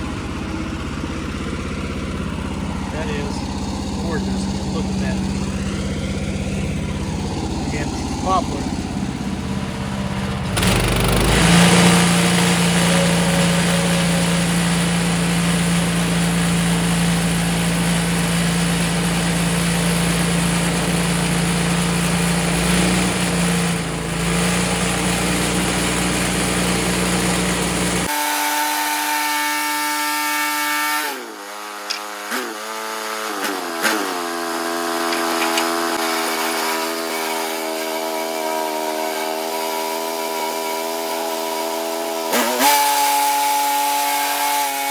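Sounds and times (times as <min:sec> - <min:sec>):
sawmill engine running under load: 0:00.0 - 0:44.9
saw blade cutting log: 0:02.8 - 0:05.7, 0:07.0 - 0:08.8, 0:10.5 - 0:44.9.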